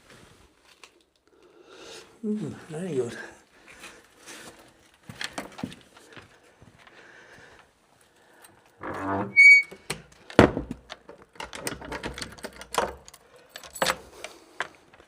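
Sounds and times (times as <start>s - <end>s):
rattling creak: 8.8s - 10.0s
high squeak: 8.9s - 9.8s
irregular knocks and thuds: 10.3s - 12.2s.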